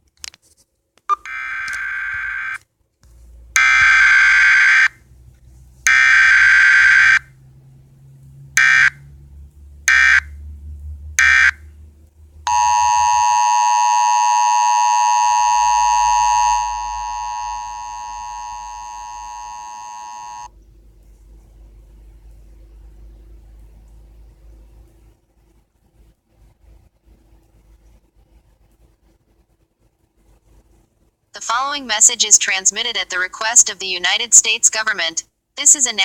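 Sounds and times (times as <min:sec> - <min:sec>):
two-tone attention signal: 0:12.5 - 0:20.5.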